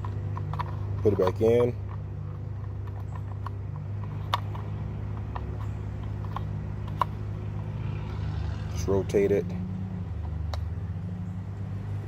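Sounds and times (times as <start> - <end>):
plastic clicks and taps: 0.0 - 7.2
steady low hum: 0.0 - 12.0.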